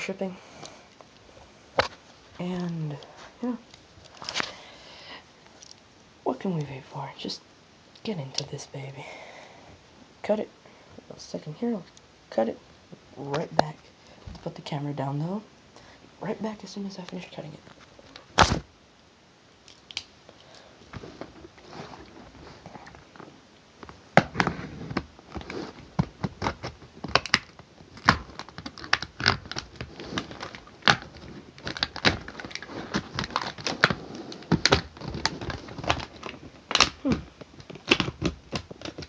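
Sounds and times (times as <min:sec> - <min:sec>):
plastic packaging clicking and snapping: 0:23.8 - 0:39.0.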